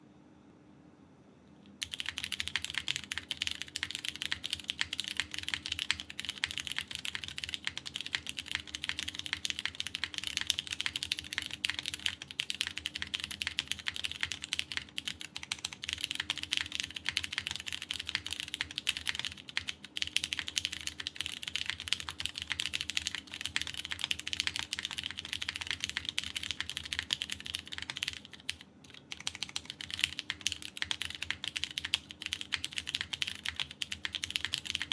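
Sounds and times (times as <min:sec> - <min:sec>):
mechanical keyboard typing: 0:01.8 - 0:34.9.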